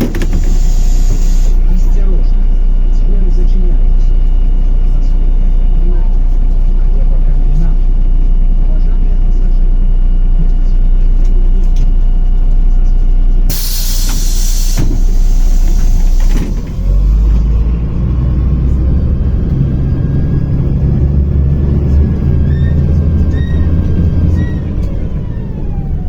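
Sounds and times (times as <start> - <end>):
bus diesel engine rumbling: 0.0 - 26.0
compressed air hiss: 0.4 - 1.6, 13.5 - 16.7.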